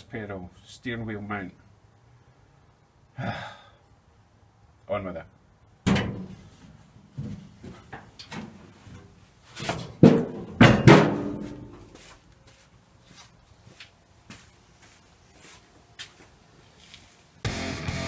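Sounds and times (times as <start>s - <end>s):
knocks and clunks: 5.8s - 6.4s, 9.6s - 11.9s
loud metallic bangs: 10.0s - 11.7s.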